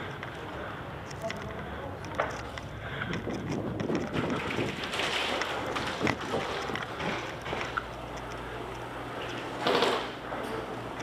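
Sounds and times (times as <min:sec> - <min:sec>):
rustling and handling noise: 0:00.0 - 0:10.1.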